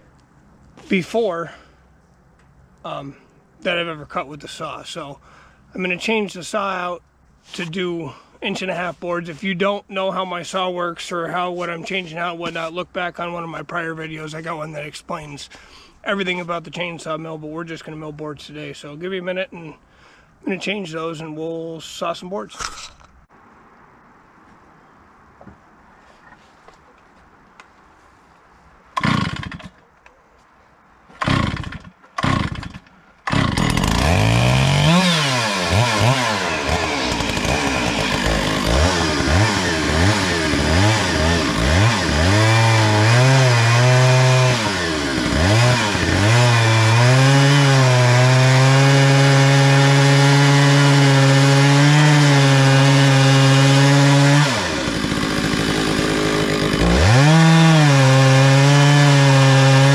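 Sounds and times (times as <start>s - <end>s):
chainsaw starting and revving: 29.0s - 29.8s, 31.2s - 59.9s.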